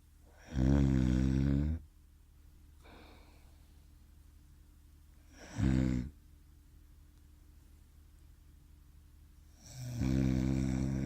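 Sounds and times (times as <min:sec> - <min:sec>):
person snoring: 0:00.3 - 0:01.8, 0:05.3 - 0:06.2, 0:09.6 - 0:11.0
soft breath out: 0:02.8 - 0:04.0.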